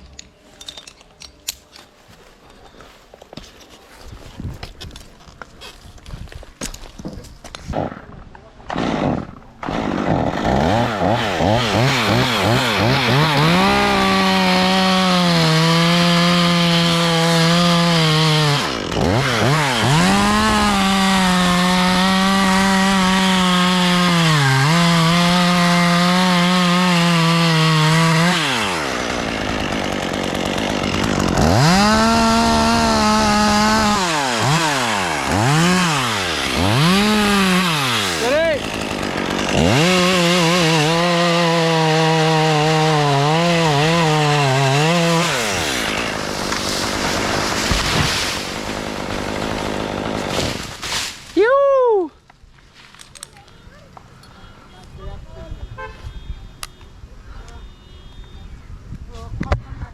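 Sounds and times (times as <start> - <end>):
chainsaw cutting wood: 7.5 - 51.4.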